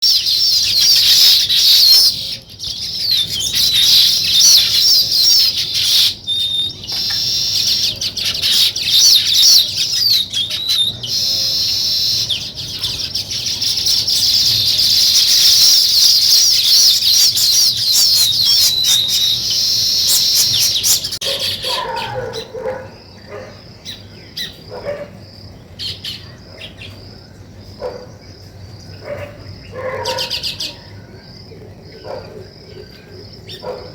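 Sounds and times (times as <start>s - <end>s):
lower-pitched bird calls: 0.0s - 33.9s
songbirds chirping: 0.0s - 33.9s.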